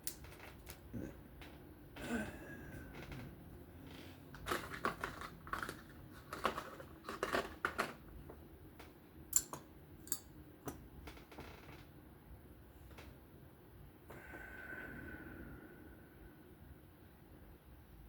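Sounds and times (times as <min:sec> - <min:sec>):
small metal parts clicking: 0:09.3 - 0:10.3.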